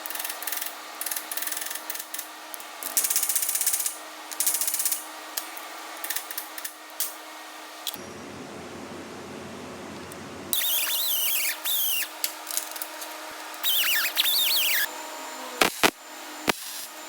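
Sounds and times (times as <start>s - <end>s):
power tool working metal: 10.6s - 17.0s.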